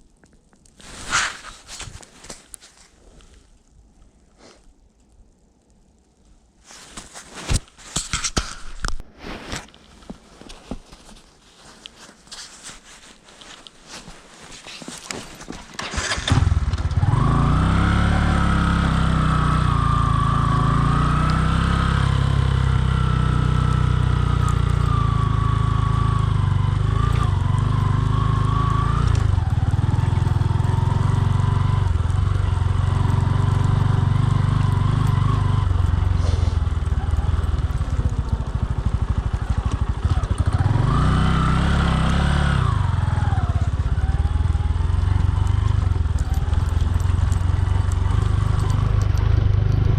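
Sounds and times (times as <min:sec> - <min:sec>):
motorcycle engine revving: 0:15.8 - 0:49.9.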